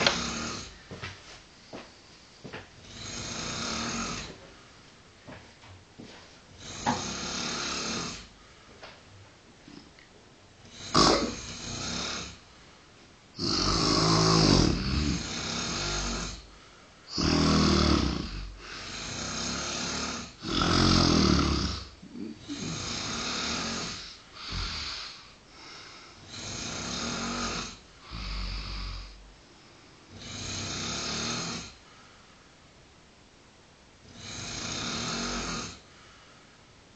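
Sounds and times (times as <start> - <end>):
men snoring: 0.0 - 0.8, 2.8 - 4.4, 6.6 - 8.3, 10.6 - 12.4, 13.4 - 16.5, 17.1 - 29.2, 30.1 - 31.8, 34.0 - 35.8.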